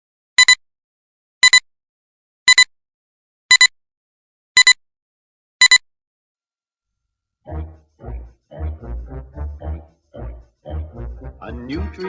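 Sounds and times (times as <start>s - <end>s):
electronic double beep: 0.4s - 0.6s, 1.4s - 1.6s, 2.5s - 2.7s, 3.5s - 3.7s, 4.6s - 4.8s, 5.6s - 5.8s.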